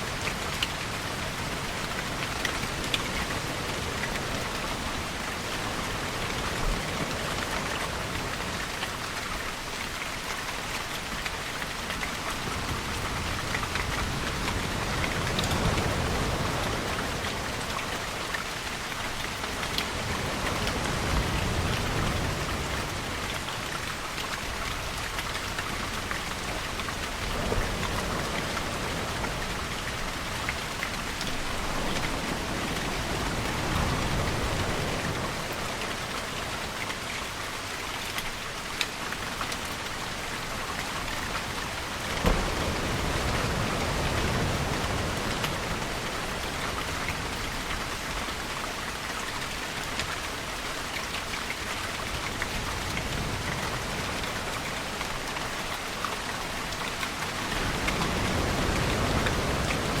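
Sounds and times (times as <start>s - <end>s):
steady rain falling: 0.0s - 60.0s.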